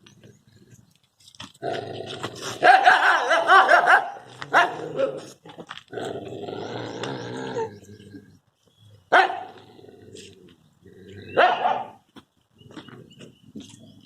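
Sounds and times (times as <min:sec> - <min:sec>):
dogs snarling and yelping: 0:01.6 - 0:08.4, 0:09.0 - 0:12.0
dog barking: 0:02.6 - 0:05.2, 0:09.1 - 0:09.6, 0:11.4 - 0:12.0
dog growling: 0:05.9 - 0:08.4.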